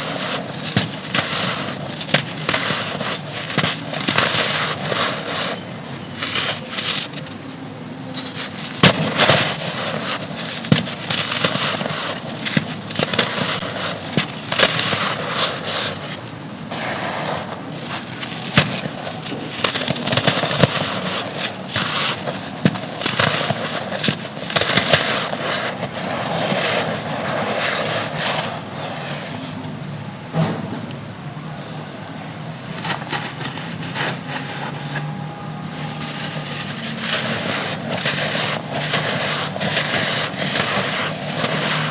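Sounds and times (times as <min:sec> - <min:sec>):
dry dirt chunks crunching: 0:00.0 - 0:28.4, 0:32.8 - 0:41.9.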